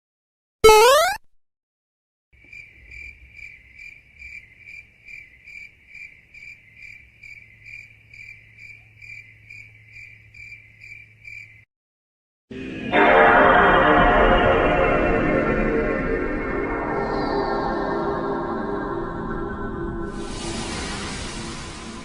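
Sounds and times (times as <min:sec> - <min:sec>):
crickets chirping: 0:02.4 - 0:11.6.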